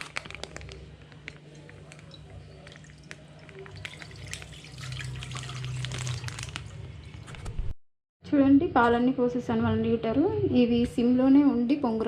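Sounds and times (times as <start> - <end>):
milk pouring into a pan: 1.6 - 7.3.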